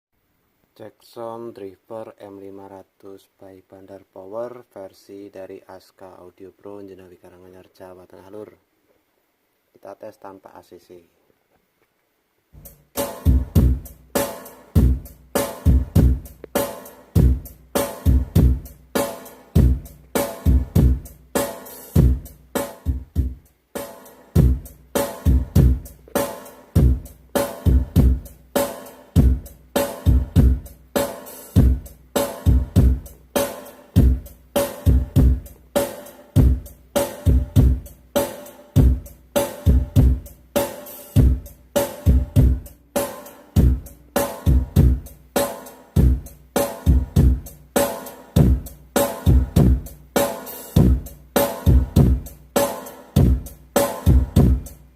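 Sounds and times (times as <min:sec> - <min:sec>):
drum-heavy music through loudspeaker: 0:12.6 - 0:54.9.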